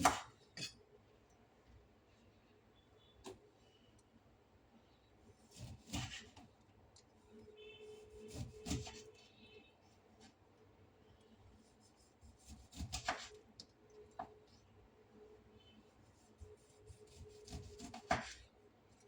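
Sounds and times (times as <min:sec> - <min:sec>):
knife slicing a lemon: 0:00.0 - 0:00.8, 0:05.5 - 0:06.4, 0:08.1 - 0:09.2, 0:12.2 - 0:13.4, 0:16.1 - 0:18.5.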